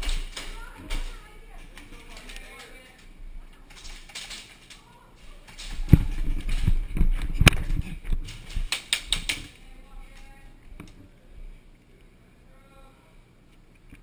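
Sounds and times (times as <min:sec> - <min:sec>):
sharp clicks: 0:08.3 - 0:09.6.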